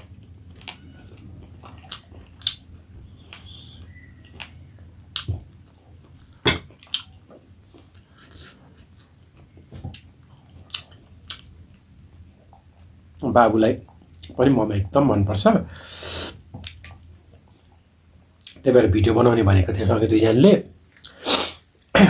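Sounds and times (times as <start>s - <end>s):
person chewing: 0.5s - 12.9s, 20.9s - 21.9s.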